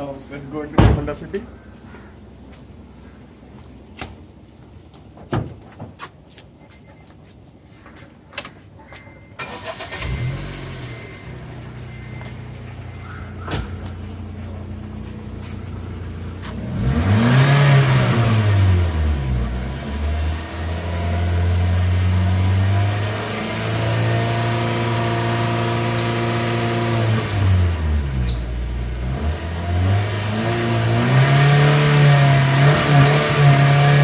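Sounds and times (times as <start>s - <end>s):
car engine starting and idling: 9.3s - 34.0s
engine revving: 9.4s - 13.4s, 16.3s - 34.0s.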